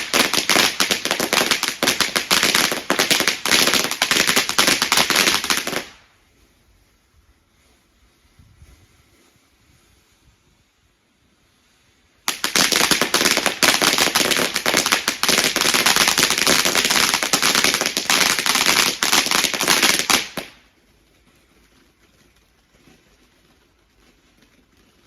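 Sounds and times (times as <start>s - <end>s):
firework crackling: 0.0s - 6.2s, 11.5s - 25.0s.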